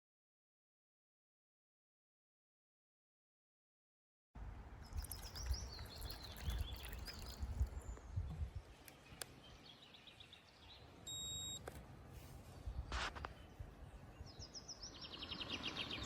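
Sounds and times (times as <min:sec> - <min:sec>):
songbirds chirping: 0:04.6 - 0:16.0
wind rumble on microphone: 0:04.8 - 0:08.8
high electronic beep: 0:11.1 - 0:11.6.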